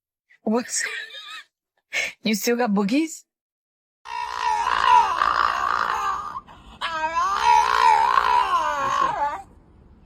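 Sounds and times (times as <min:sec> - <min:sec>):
dog howling moans: 0:04.1 - 0:09.5.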